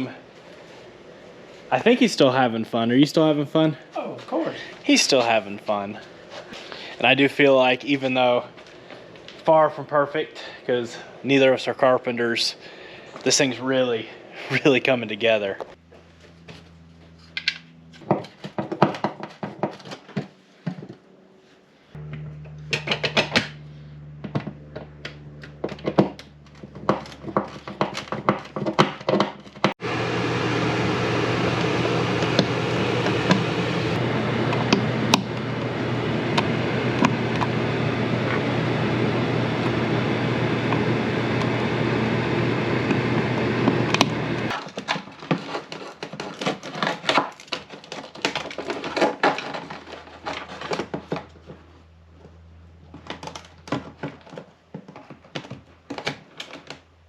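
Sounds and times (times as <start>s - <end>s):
steady machine noise: 15.8s - 18.7s, 22.0s - 28.1s, 29.8s - 44.5s.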